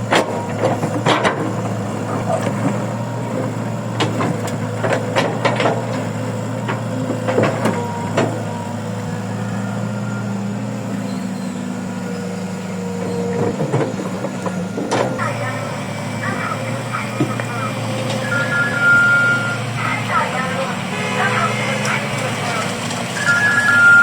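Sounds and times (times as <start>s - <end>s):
metal knocks and clanks: 0.0s - 2.8s, 4.0s - 8.5s
diesel machinery humming: 0.0s - 24.0s.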